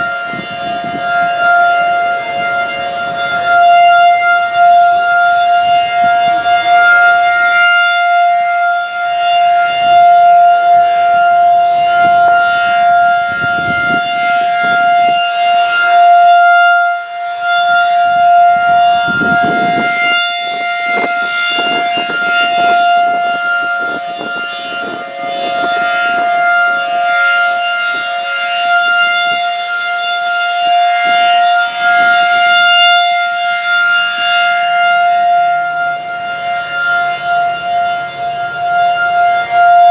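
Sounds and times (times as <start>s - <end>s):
warning siren wailing: 0.0s - 39.9s.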